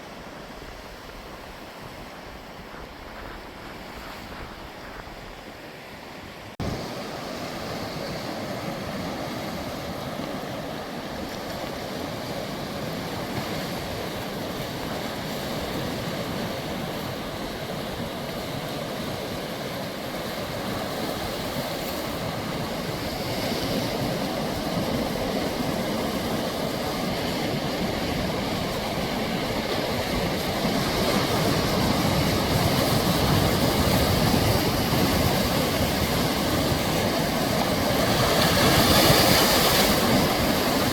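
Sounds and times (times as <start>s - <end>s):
sea surf washing on shore: 0.0s - 40.9s.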